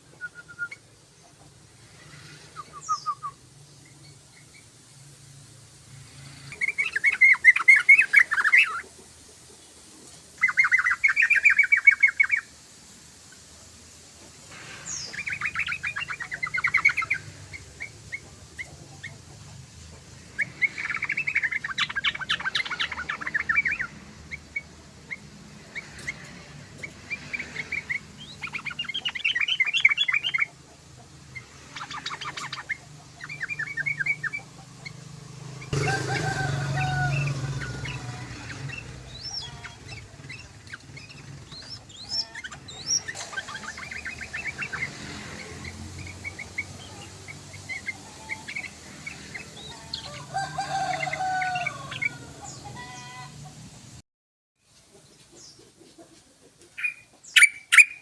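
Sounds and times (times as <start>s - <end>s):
bulbul singing chattering phrases: 6.4s - 9.5s, 10.4s - 12.6s, 14.6s - 50.4s, 56.7s - 58.0s.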